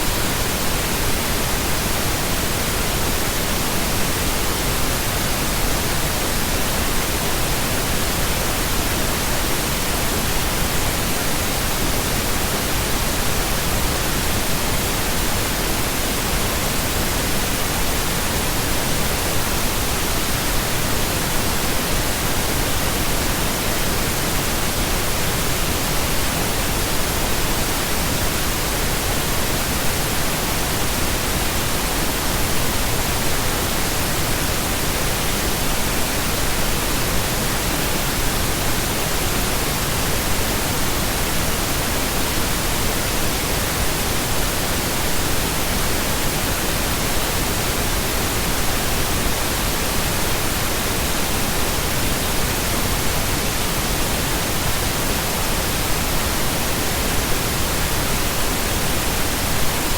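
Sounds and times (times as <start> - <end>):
pink noise hiss: 0.0 - 59.9.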